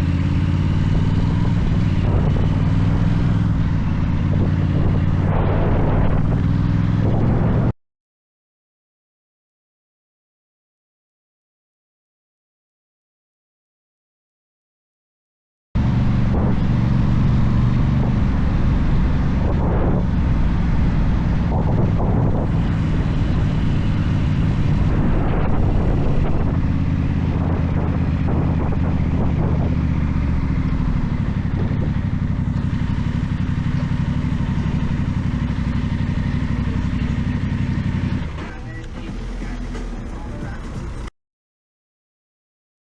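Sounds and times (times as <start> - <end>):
motorcycle engine revving: 0.0 - 7.8, 15.8 - 41.1.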